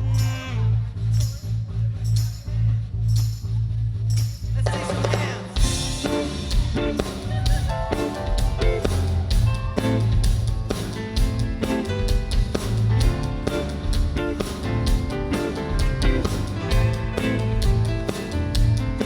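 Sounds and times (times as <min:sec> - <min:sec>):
drum kit beat: 0:04.6 - 0:19.0
band playing instrumental: 0:05.6 - 0:19.0.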